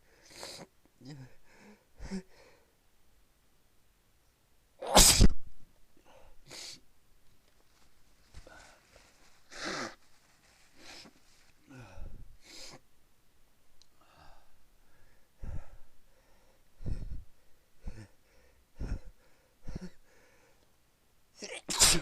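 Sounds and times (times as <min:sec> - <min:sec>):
person sneezing: 0:04.8 - 0:05.4, 0:21.4 - 0:22.0.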